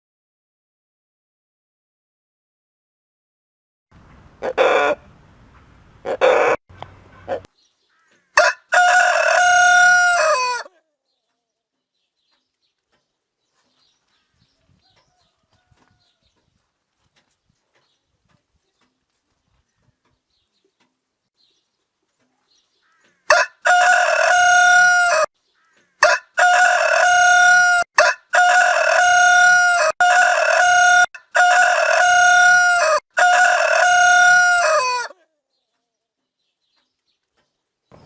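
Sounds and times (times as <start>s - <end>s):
rooster crowing: 4.4s - 5.0s, 6.1s - 6.6s, 8.3s - 10.7s, 14.9s - 16.3s, 23.2s - 25.3s, 26.0s - 35.2s.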